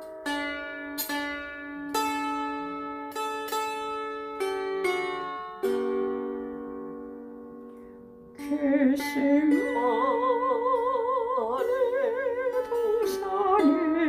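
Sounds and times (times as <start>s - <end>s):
plucked lyre harp notes: 0.0s - 14.0s
person singing with vibrato: 8.4s - 14.0s.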